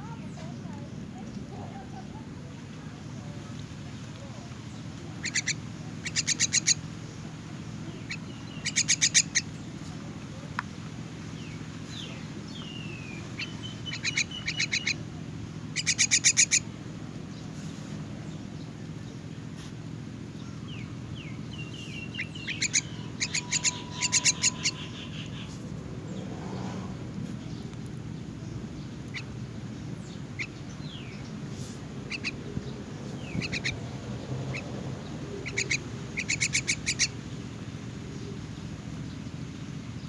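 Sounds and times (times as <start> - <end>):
steady low hum: 0.0 - 40.0
bird chick harsh chirps: 5.1 - 6.9, 7.8 - 9.6, 11.9 - 16.7, 20.5 - 25.6, 28.8 - 29.4, 30.0 - 31.4, 32.0 - 37.2.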